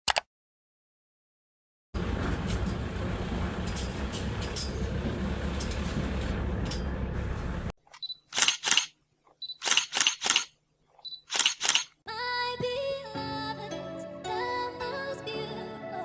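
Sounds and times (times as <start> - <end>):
camera shutter clicks: 8.3 - 9.0, 9.6 - 10.5, 11.3 - 12.0.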